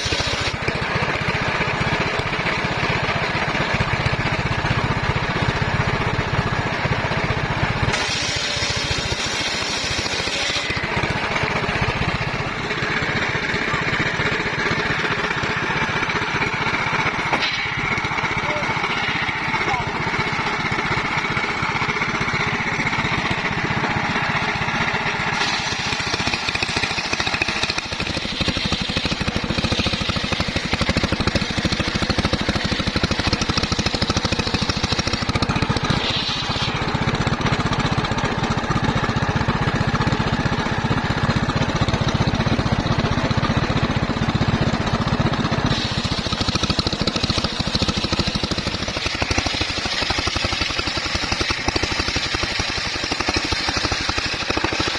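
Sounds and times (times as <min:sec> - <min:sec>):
bandsaw sawing wood: 0:00.0 - 0:04.2, 0:07.8 - 0:16.2, 0:16.8 - 0:37.9, 0:45.6 - 0:54.9.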